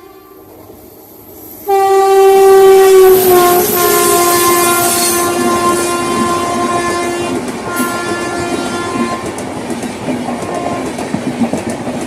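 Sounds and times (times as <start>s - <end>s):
loud train horn blast: 0.0s - 0.5s, 1.6s - 9.4s, 10.3s - 11.0s
train running on track: 0.0s - 12.0s.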